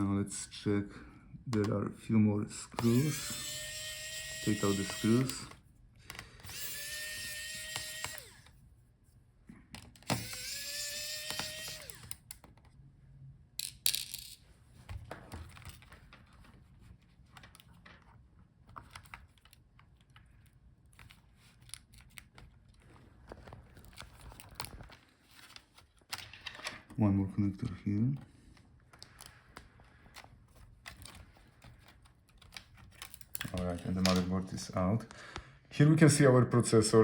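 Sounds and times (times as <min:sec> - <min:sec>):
electric screwdriver whine: 0:02.8 - 0:05.5, 0:06.4 - 0:08.6, 0:10.0 - 0:12.2
small screws clicking and tapping: 0:02.8 - 0:08.5, 0:09.8 - 0:12.5.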